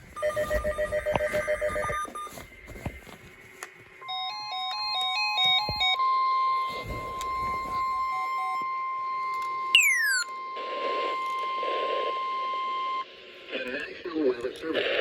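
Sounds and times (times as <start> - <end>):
stepping melody of beeps: 0.1 - 2.3, 4.0 - 10.6.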